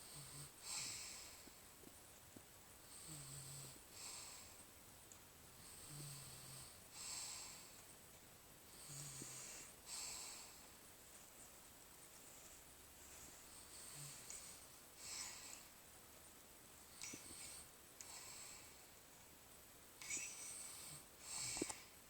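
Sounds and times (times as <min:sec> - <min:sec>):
slow snoring: 0:00.0 - 0:01.5, 0:02.9 - 0:04.6, 0:05.6 - 0:07.7, 0:08.8 - 0:10.6, 0:13.7 - 0:15.6, 0:20.0 - 0:21.9.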